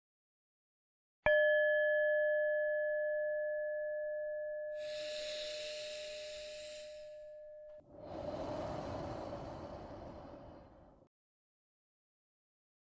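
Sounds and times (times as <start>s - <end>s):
meditation bell ringing: 1.3s - 7.8s
long soft breath: 4.8s - 11.1s.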